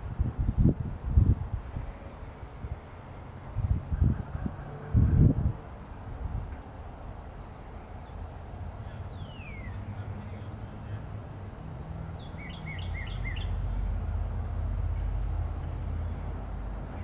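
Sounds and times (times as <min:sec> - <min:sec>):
songbird whistling and chirping: 0:12.2 - 0:13.6.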